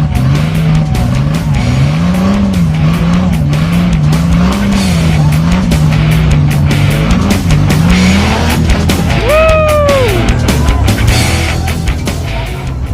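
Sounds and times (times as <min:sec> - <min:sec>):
loud driving music with beat: 0:00.0 - 0:12.9.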